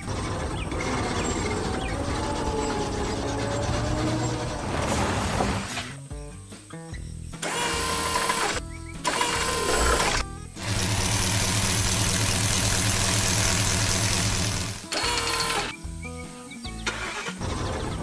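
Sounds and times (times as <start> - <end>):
machine-like running noise: 0.0 - 5.7, 7.4 - 15.7.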